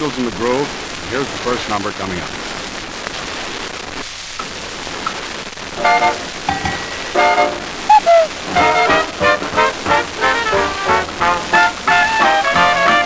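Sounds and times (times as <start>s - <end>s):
old recording hiss: 0.0s - 13.0s
swing band with brass: 5.8s - 13.0s.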